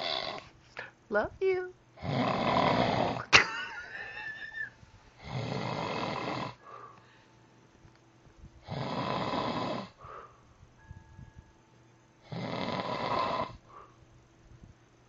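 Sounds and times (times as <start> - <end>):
man snoring heavily: 0.0 - 0.5, 2.0 - 3.3, 5.2 - 7.0, 8.6 - 10.3, 12.2 - 13.9
soft breath: 6.6 - 7.5, 9.9 - 10.8, 13.5 - 14.1.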